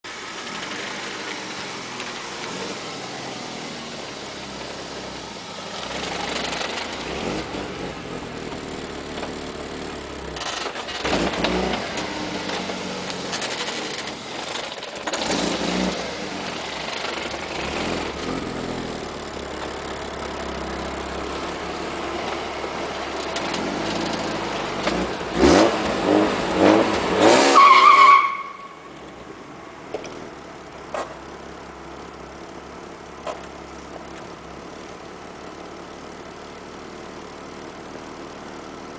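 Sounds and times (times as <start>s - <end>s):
car engine revving: 0.1s - 29.0s.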